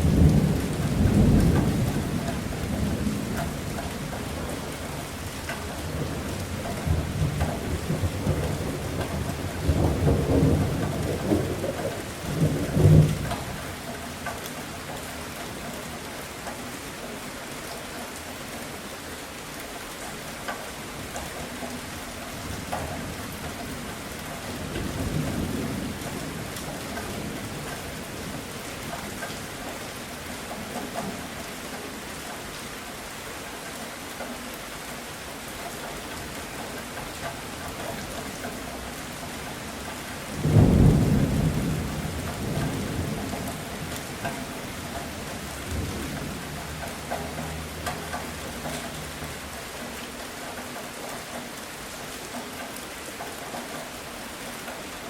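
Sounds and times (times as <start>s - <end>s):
rolling thunder: 0.0s - 4.8s, 5.9s - 13.8s, 38.8s - 48.4s
steady rain falling: 0.0s - 55.0s.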